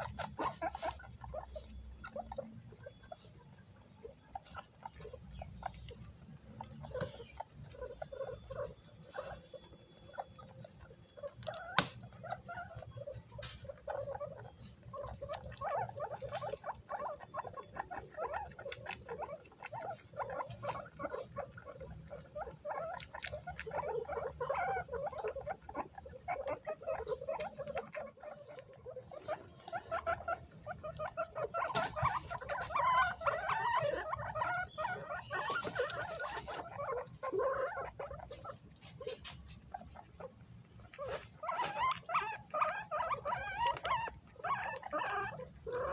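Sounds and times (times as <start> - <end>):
guinea pigs squeaking: 0.0 - 45.9.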